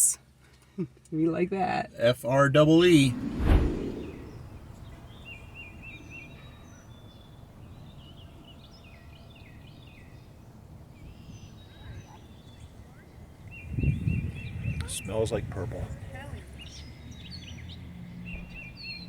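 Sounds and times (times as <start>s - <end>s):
songbirds chirping and whistling: 2.9s - 15.4s, 16.4s - 19.0s.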